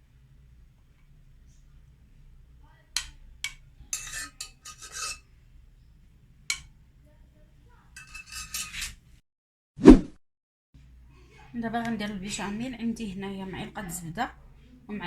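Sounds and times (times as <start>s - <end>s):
spoon tapping: 0.9s - 6.8s, 7.9s - 8.9s
metal spoon scraping cookware: 3.0s - 5.3s, 6.4s - 6.7s, 7.9s - 9.1s.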